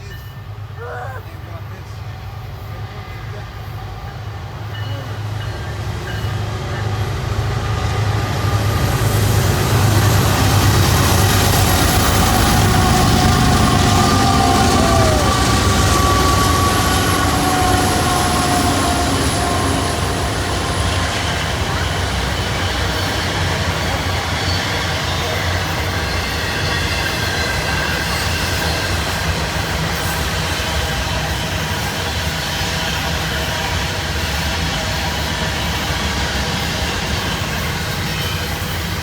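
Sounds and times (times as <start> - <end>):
diesel locomotive rumble: 0.0 - 39.0.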